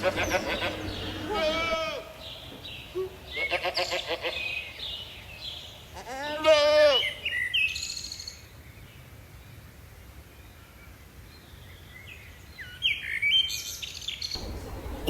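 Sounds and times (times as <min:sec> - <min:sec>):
birds chirping and calling: 0:00.0 - 0:02.0, 0:14.4 - 0:15.0
wavering bleat: 0:00.0 - 0:02.1, 0:06.0 - 0:07.0.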